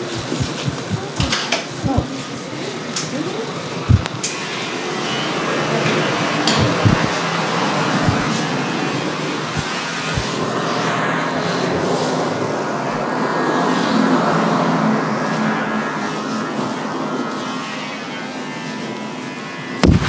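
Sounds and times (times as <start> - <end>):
loud rushing noise: 0.0 - 2.1, 3.9 - 4.2, 6.6 - 8.5
short low thumps: 0.2 - 2.1, 3.9 - 4.2, 6.6 - 7.1, 8.0 - 8.3.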